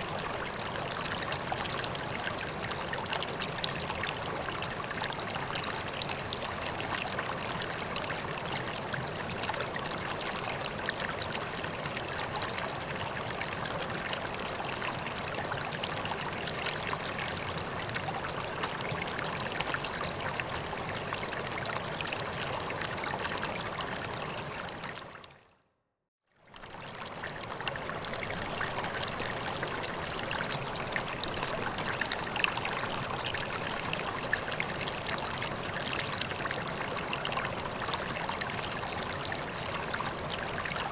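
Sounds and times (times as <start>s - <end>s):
pond water trickling: 26.4s - 40.9s.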